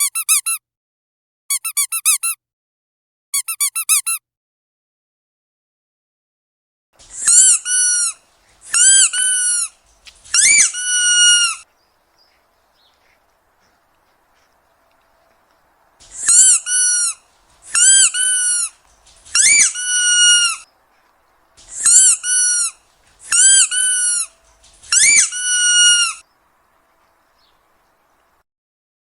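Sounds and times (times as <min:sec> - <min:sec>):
squeaky dog toy squeaking: 0:00.0 - 0:00.6, 0:01.5 - 0:02.4, 0:03.4 - 0:04.2, 0:07.2 - 0:09.7, 0:10.3 - 0:11.6, 0:16.2 - 0:20.6, 0:21.7 - 0:24.3, 0:24.9 - 0:26.2.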